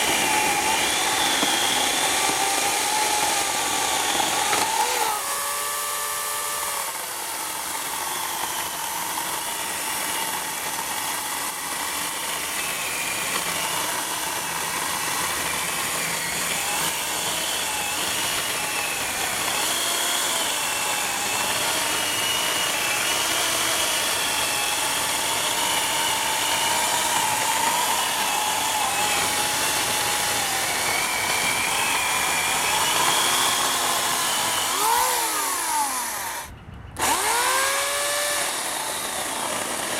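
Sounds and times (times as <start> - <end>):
electric chainsaw cutting wood: 0.0 - 39.9.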